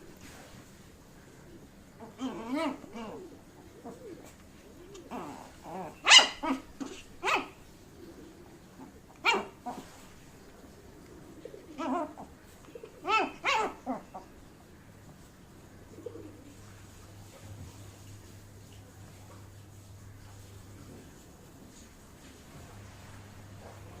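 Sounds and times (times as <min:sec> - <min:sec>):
puppy barking: 0:05.2 - 0:07.6, 0:09.2 - 0:09.8, 0:13.0 - 0:14.3.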